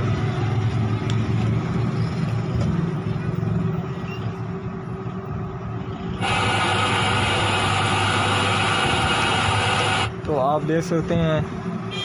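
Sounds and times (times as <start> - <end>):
tv speaker static hiss: 6.2 - 10.1.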